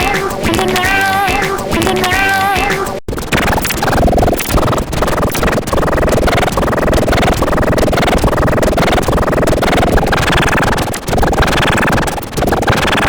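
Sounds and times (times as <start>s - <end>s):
distorted children's song remix: 0.0s - 3.0s.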